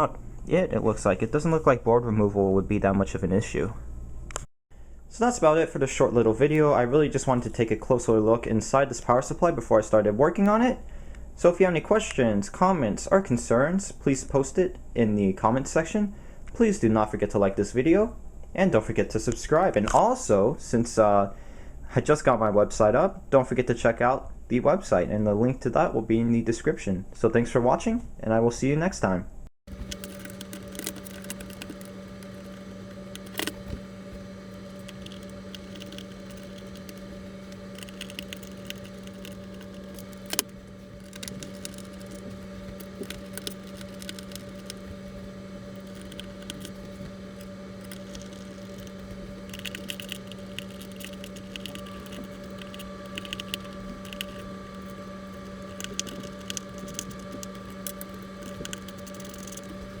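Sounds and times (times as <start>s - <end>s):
light tapping and rattling: 29.7s - 60.0s
sharp clicks: 29.7s - 60.0s
steady low hum: 29.7s - 60.0s.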